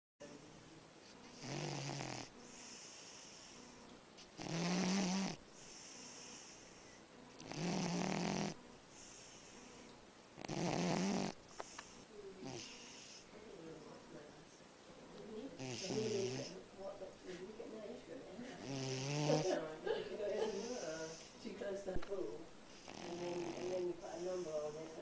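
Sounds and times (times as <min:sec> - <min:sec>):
dog snoring: 0:01.2 - 0:03.8, 0:04.4 - 0:13.3, 0:15.6 - 0:16.6, 0:18.6 - 0:19.7, 0:20.5 - 0:21.3, 0:22.7 - 0:25.0.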